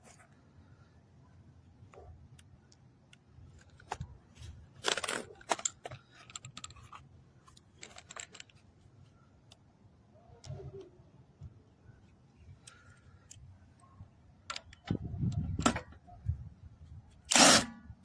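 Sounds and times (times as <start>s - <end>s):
light clicks and clatters: 1.9s - 9.6s, 12.5s - 15.9s.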